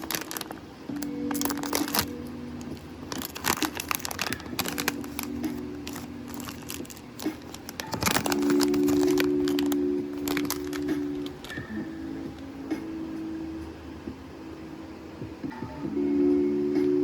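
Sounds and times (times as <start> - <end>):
plastic wrapper crinkling and tearing: 0.0 - 11.7
held musical tones: 0.0 - 17.0.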